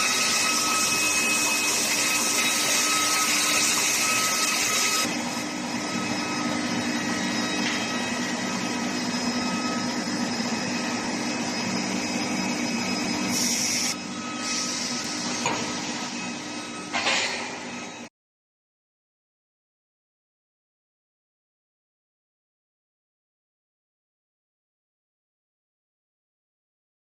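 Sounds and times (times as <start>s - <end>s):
furnace machine noise: 0.0s - 18.1s.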